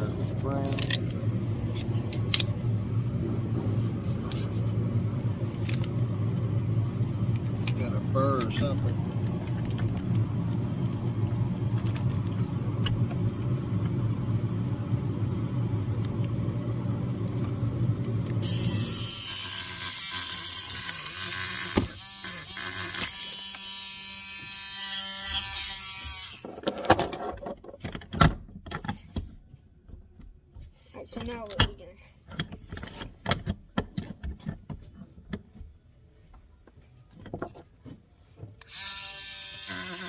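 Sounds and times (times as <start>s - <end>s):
electric tool motor grinding: 18.2s - 26.6s, 38.6s - 40.0s.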